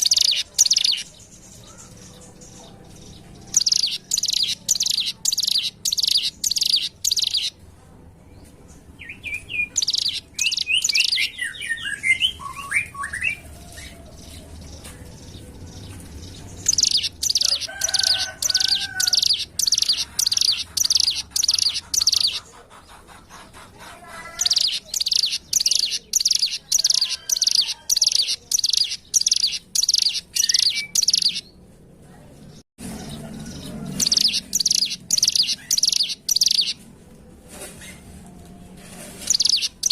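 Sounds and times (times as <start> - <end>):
bird chirping high and sharp: 0.0 - 2.4, 3.4 - 7.6, 9.0 - 14.0, 16.6 - 22.4, 24.4 - 31.5, 33.9 - 36.8, 39.2 - 39.9.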